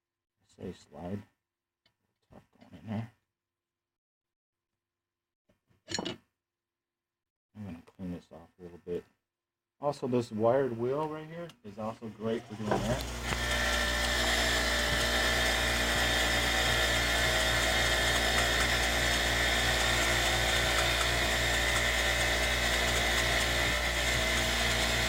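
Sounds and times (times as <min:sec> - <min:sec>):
drill with wire brush on metal: 0:12.2 - 0:25.0.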